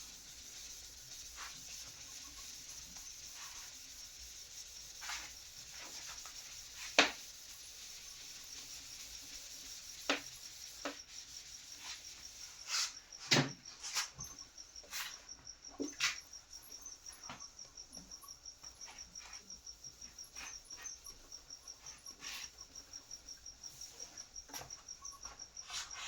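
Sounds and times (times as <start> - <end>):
writing tool scratching: 0.0 - 13.0, 18.8 - 22.8.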